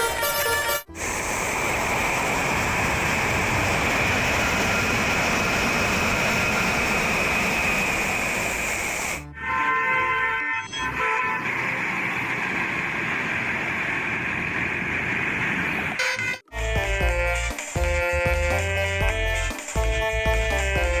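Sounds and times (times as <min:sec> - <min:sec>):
steady rushing noise: 0:00.9 - 0:09.2.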